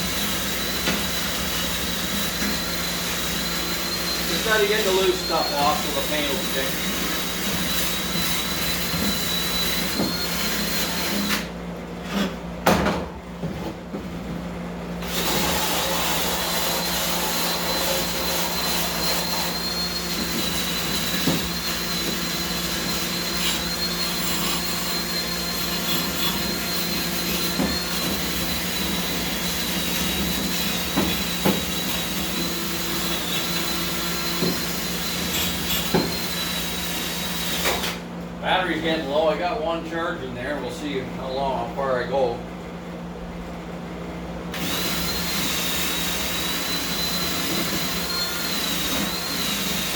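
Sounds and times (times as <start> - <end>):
power tool running steadily: 0.0 - 11.5, 15.0 - 38.0, 44.5 - 49.9.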